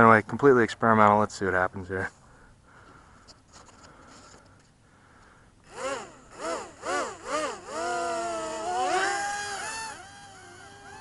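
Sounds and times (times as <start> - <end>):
quadcopter motors whining: 5.6 - 11.0.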